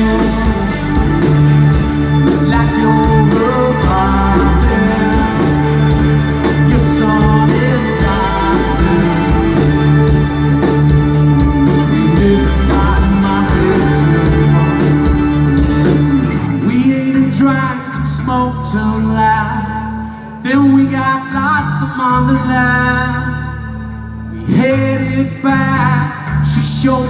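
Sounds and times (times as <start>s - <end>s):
live rock band playing: 0.0s - 20.2s.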